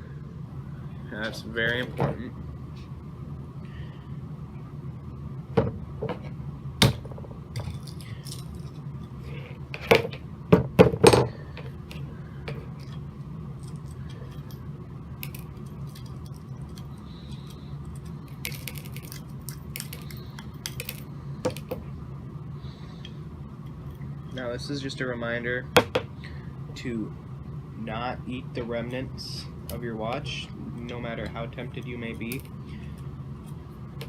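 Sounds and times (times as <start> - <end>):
steady low hum: 0.0 - 34.0
watch parts clicking and clattering: 7.6 - 10.2, 10.9 - 21.8.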